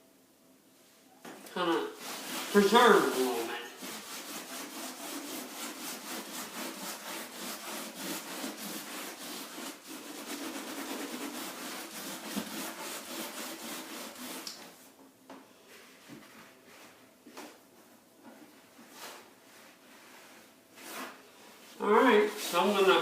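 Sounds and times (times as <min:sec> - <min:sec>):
steel wool scrubbing wood floor: 0:01.5 - 0:14.8, 0:18.8 - 0:23.0.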